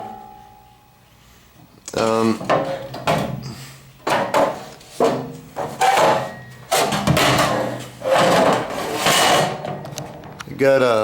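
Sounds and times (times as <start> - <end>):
sheet metal sliding and scraping: 4.0 - 10.1.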